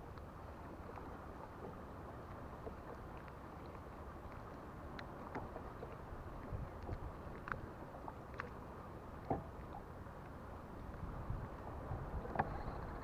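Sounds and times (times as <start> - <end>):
faint small clicks: 0.0 - 0.3, 2.9 - 6.0, 6.7 - 8.6
wind and water wash: 0.0 - 13.0.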